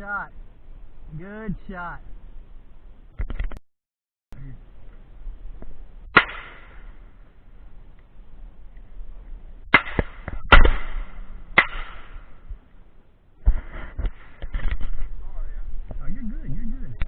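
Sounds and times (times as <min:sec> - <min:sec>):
distant gunshots: 0:06.1 - 0:07.0, 0:09.7 - 0:12.4
shotgun shots: 0:06.1 - 0:07.0, 0:09.7 - 0:12.4.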